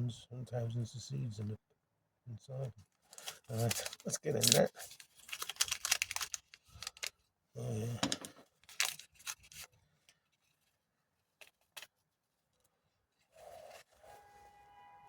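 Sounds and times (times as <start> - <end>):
paper packet crinkling: 3.0 - 7.2, 8.1 - 9.8.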